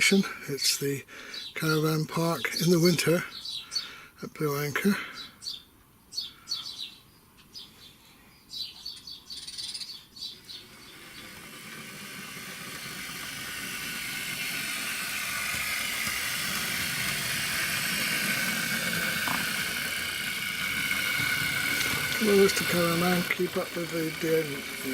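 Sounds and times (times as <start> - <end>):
birdsong chirping: 0.0 - 11.4
model train whirring: 9.4 - 24.9.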